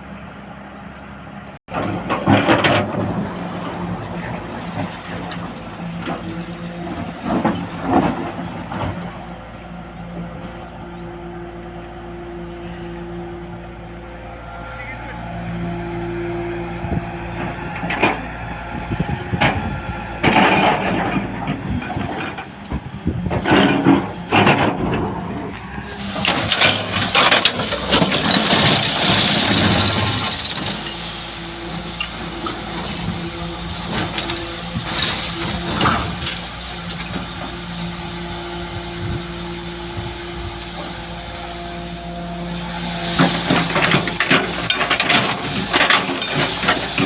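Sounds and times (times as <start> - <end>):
excavator engine running: 0.0 - 47.0
loud clanks and scrapes: 1.7 - 9.2, 19.3 - 47.0.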